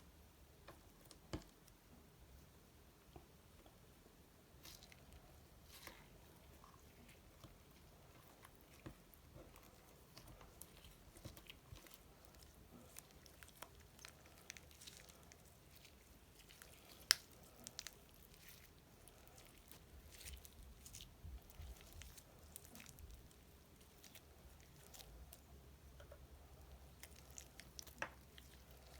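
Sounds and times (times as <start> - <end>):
sticky slime clicks and squelches: 16.4 - 18.6.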